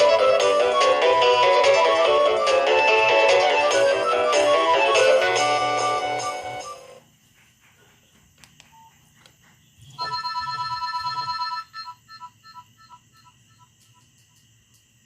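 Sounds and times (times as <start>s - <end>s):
electronic ringtone tone and beeps: 10.0s - 13.7s
polyphonic ringtone tune: 10.0s - 13.7s.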